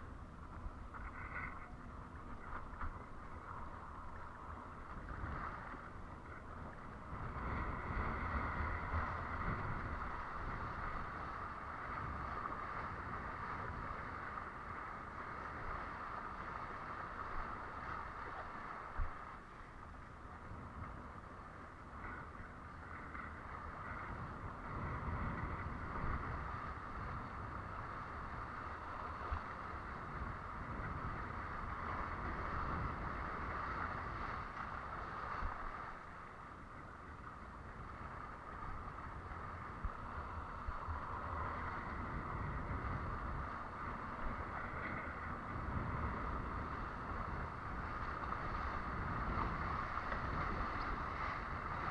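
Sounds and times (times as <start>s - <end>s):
wind buffeting microphone: 0.0s - 51.9s.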